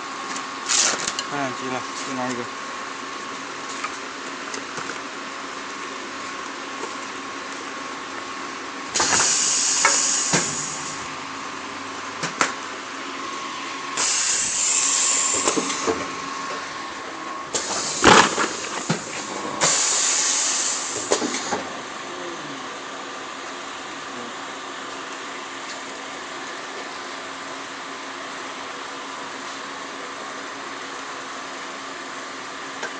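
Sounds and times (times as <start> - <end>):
steady machine hum: 0.0 - 32.8
air hiss bursts: 9.0 - 11.0, 14.0 - 16.0, 17.5 - 21.6.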